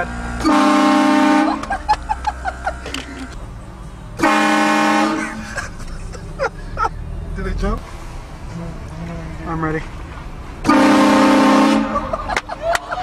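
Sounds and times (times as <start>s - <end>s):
air horn blasts: 0.4s - 1.7s, 4.2s - 5.4s, 10.6s - 12.2s.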